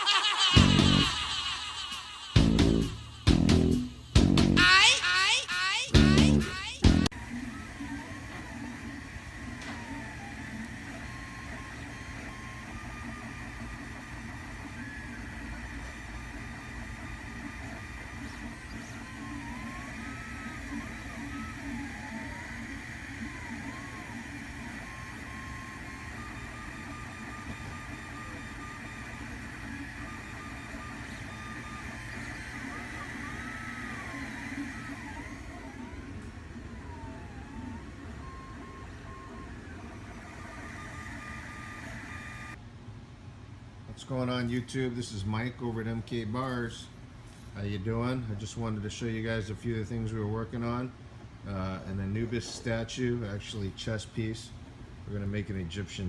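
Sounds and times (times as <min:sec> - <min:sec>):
fan hum: 0:00.0 - 0:56.0
stepper motors whining: 0:00.6 - 0:01.4, 0:05.9 - 0:42.6.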